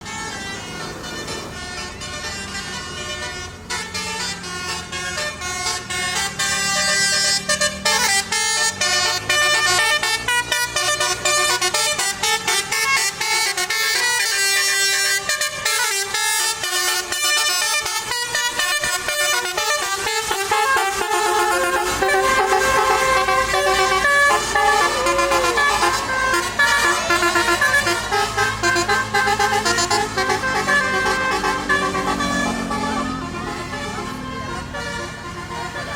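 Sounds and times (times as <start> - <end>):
engine rumble: 0.0 - 35.9
musical bus air horn: 0.0 - 35.9.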